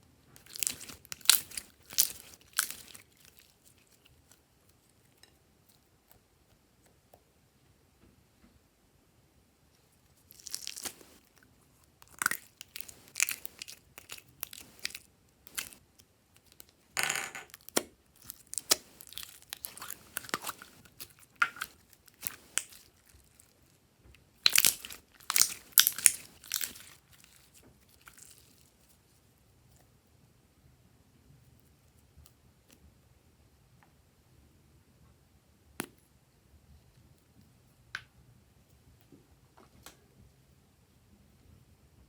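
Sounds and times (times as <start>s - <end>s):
slime squished and stretched: 0.4s - 4.4s, 10.1s - 15.8s, 17.5s - 23.7s, 24.4s - 28.8s
sticky crackling and popping: 0.4s - 4.4s, 10.1s - 16.9s, 17.5s - 23.8s, 24.4s - 28.6s.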